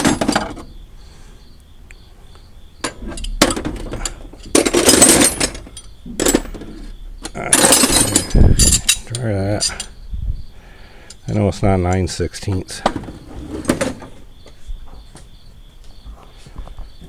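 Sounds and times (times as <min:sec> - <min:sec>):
metal wrenches clinking: 0:00.0 - 0:00.7, 0:02.8 - 0:10.0, 0:11.1 - 0:14.2.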